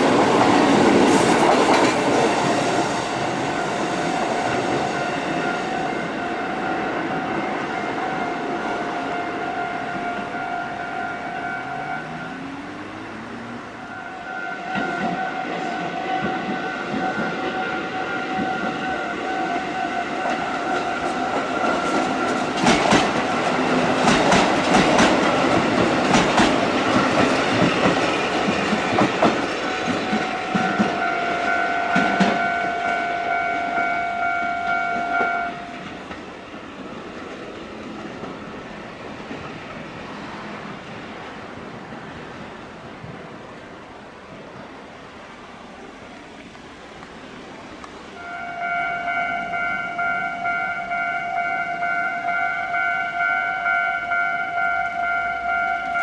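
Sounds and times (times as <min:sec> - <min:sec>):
train wheels clacking over rail joints: 0:00.0 - 0:05.9, 0:19.6 - 0:33.0
level crossing warning bell: 0:29.7 - 0:35.9, 0:48.2 - 0:56.0.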